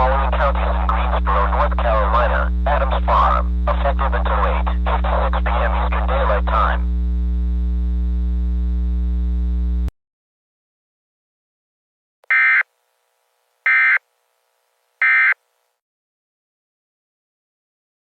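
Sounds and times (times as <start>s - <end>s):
low buzzing drone: 0.0s - 9.9s.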